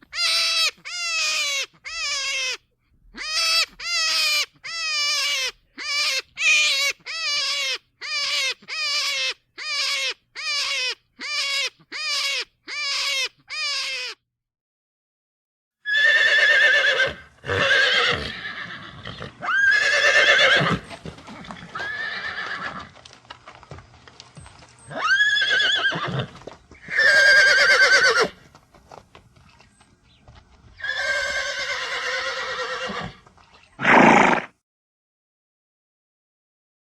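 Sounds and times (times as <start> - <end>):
horse whinnying: 15.8 - 22.9, 24.9 - 28.4, 30.8 - 33.2, 33.8 - 34.5.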